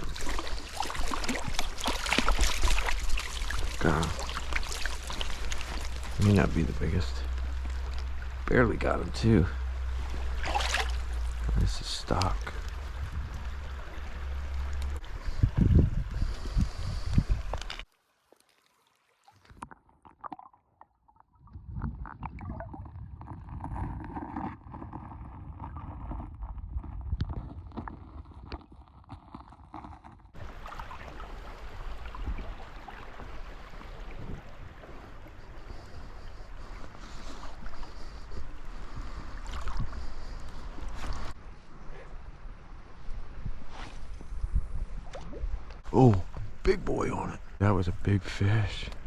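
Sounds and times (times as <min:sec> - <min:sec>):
creek water running: 0:00.0 - 0:20.6, 0:29.8 - 0:43.3, 0:45.0 - 0:49.0
wind rumble on microphone: 0:12.5 - 0:17.8, 0:21.4 - 0:29.0, 0:31.2 - 0:46.6.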